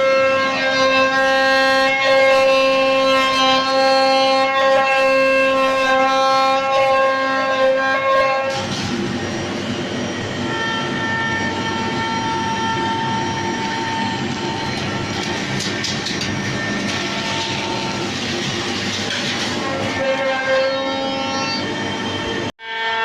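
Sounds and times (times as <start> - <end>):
router spindle whining: 8.9 - 22.3.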